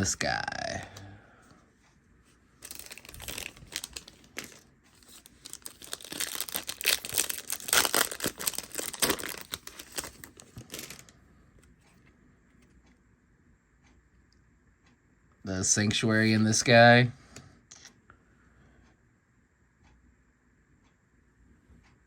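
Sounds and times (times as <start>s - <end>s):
foil wrapper crinkling and tearing: 2.6s - 11.1s.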